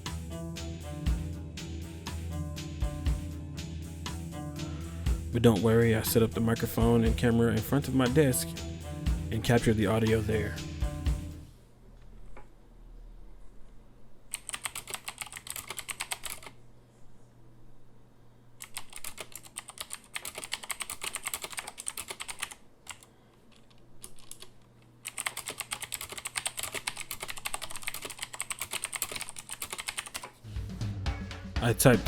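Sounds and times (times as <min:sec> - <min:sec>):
clicky keyboard typing: 0:14.3 - 0:16.6, 0:18.6 - 0:30.4.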